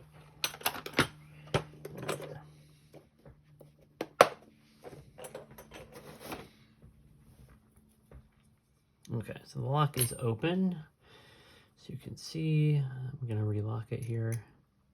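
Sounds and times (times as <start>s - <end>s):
metal tools clicking and clinking: 0.0s - 2.4s, 5.1s - 6.4s, 9.9s - 10.3s.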